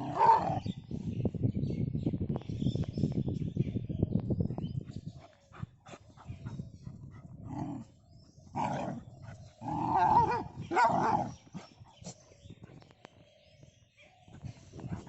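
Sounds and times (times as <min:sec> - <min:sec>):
dogs growling and snarling: 0:00.0 - 0:00.8, 0:05.6 - 0:12.8.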